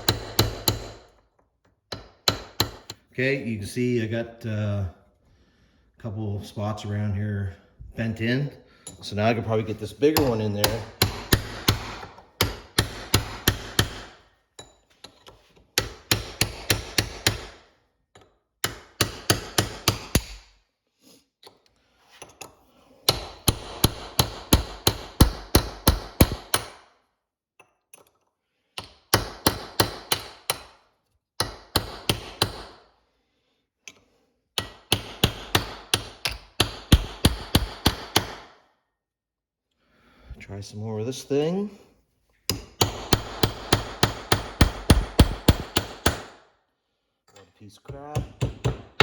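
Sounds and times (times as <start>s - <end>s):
hammer striking metal punch: 0.0s - 1.1s, 42.5s - 46.3s, 47.9s - 49.0s.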